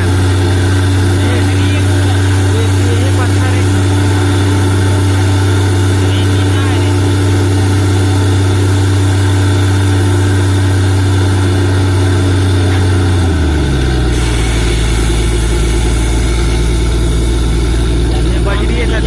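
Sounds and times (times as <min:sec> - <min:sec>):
heavy diesel engine running: 0:00.0 - 0:19.0.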